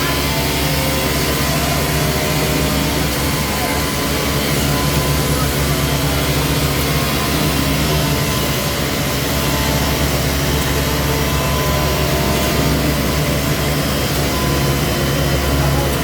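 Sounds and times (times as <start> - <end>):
concrete machinery engine hum: 0.0 - 16.0.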